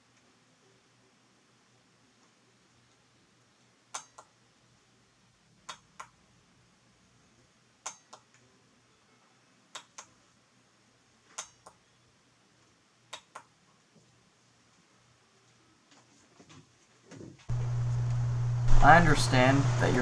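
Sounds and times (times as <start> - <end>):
relay clicking: 17.5 - 20.0.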